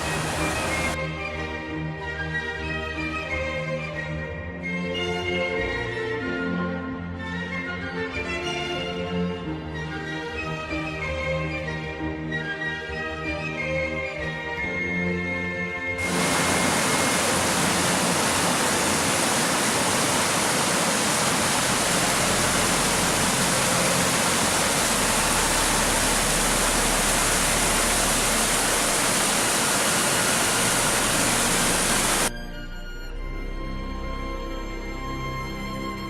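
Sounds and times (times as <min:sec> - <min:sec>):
fast water rushing: 0:00.0 - 0:01.0, 0:16.0 - 0:32.3
background music: 0:00.0 - 0:16.2, 0:30.7 - 0:36.0.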